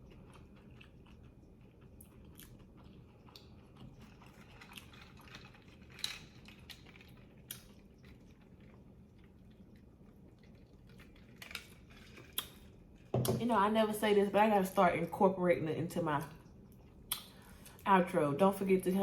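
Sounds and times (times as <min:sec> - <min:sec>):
chewing sandwich: 0:00.0 - 0:13.1, 0:16.3 - 0:17.7.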